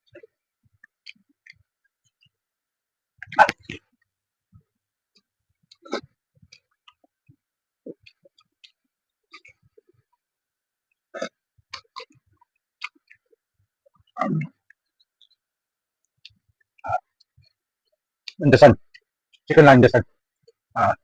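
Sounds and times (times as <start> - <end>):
person chewing: 5.1 - 10.2, 10.9 - 15.5
wet mouth smacks and clicks: 12.8 - 13.2.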